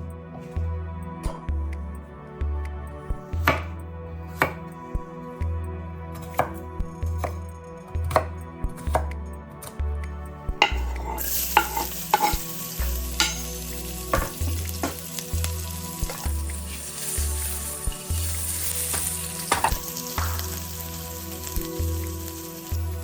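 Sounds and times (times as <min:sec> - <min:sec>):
food sizzling in pan: 0:10.7 - 0:23.0.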